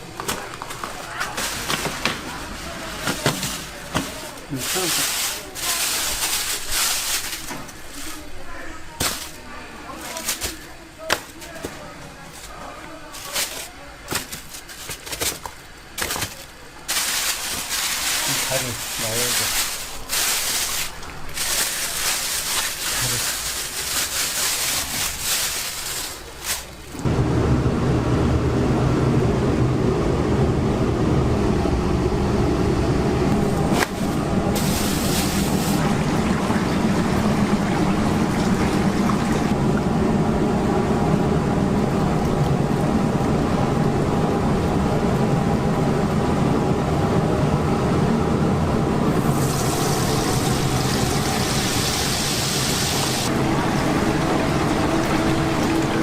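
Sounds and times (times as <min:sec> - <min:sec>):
steady rumbling noise: 0:12.4 - 0:56.0
chicken sizzling in hot oil: 0:49.2 - 0:53.3.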